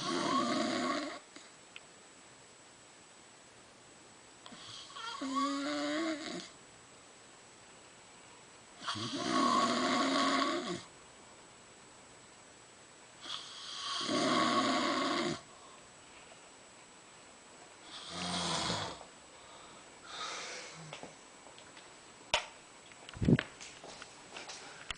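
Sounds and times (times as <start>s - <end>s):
woman snoring: 0.0s - 1.3s, 4.5s - 6.6s, 8.8s - 10.9s, 13.2s - 15.5s, 17.9s - 19.1s.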